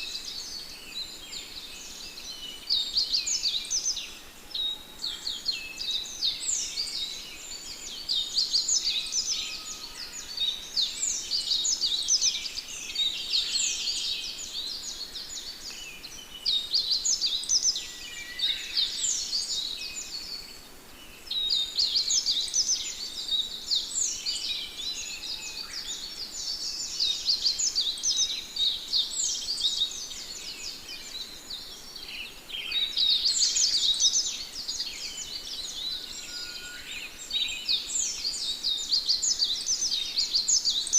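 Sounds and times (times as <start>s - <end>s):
flock of small birds chirping: 0.0s - 40.9s.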